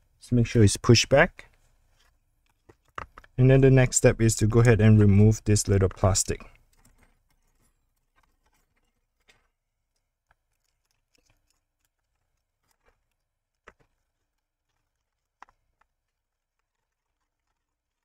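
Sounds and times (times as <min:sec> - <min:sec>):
clicks of handling plastic parts: 0:01.4 - 0:03.4, 0:05.7 - 0:18.0.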